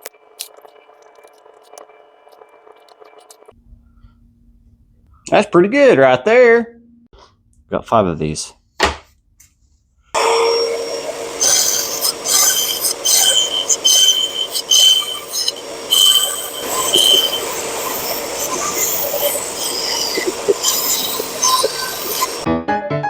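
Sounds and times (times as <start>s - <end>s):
high-pitched saw squeal: 10.2s - 22.5s
power saw cutting wood: 10.2s - 22.5s.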